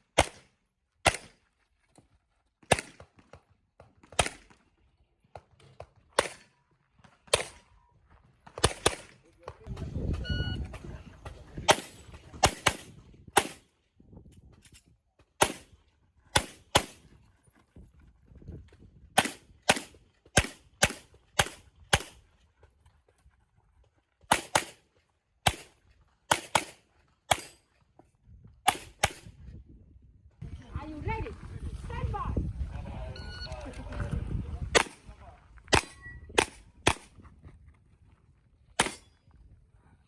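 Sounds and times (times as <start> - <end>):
handgun shots: 26.3 - 27.6, 35.7 - 37.1.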